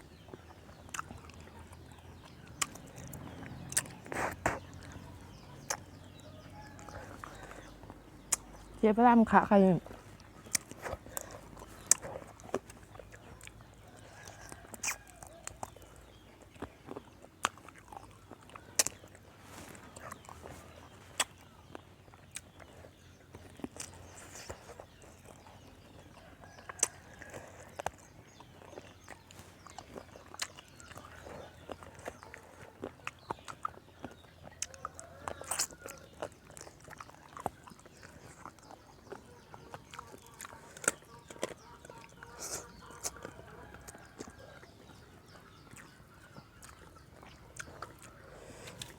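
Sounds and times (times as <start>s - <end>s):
person chewing: 0.0s - 8.8s, 9.8s - 48.9s
sharp crunches: 2.6s - 5.0s.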